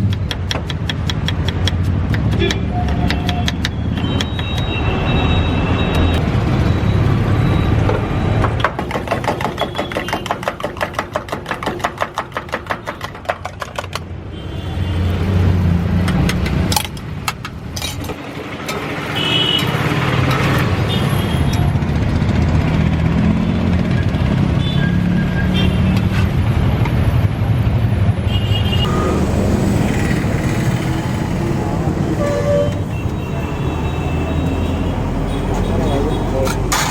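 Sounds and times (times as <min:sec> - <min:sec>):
road traffic rumbling: 0:26.4 - 0:36.9
short horn-like tones: 0:28.8 - 0:36.2.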